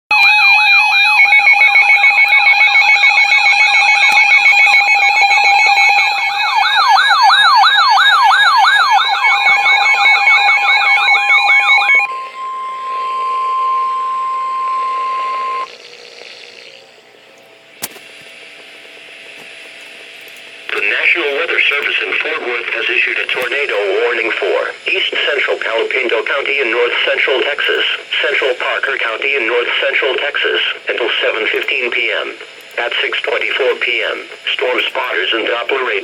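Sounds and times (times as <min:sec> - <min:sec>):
siren wails: 0:00.1 - 0:15.7
electronic alarm tones: 0:00.1 - 0:16.8
steady warning alarm tone: 0:00.1 - 0:17.1, 0:18.4 - 0:36.0.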